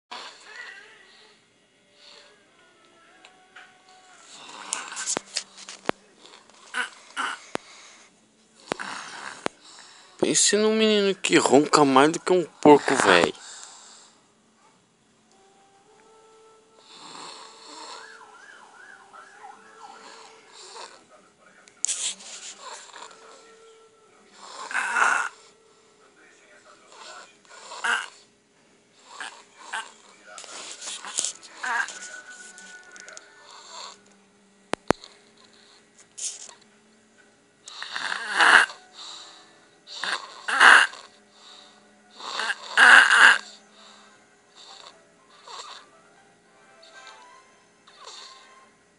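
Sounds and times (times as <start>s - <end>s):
boy snoring: 0.1s - 0.8s, 4.3s - 5.2s, 6.2s - 8.0s, 8.6s - 10.4s, 16.2s - 18.2s, 19.8s - 21.1s, 22.6s - 23.7s, 24.3s - 25.7s, 26.9s - 28.3s, 29.0s - 32.3s, 33.3s - 34.1s, 37.7s - 45.9s, 47.9s - 48.6s
soft breaths: 0.1s - 2.6s, 3.3s - 34.2s, 34.8s - 36.7s, 38.7s - 42.7s, 43.4s - 46.0s, 46.8s - 48.7s
wavering whistling tone: 17.7s - 20.4s.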